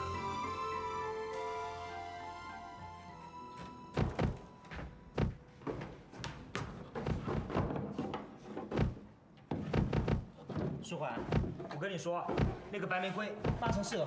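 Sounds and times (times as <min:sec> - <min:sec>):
held music note: 0:00.0 - 0:05.4
irregular knocks and thumps: 0:03.9 - 0:14.0.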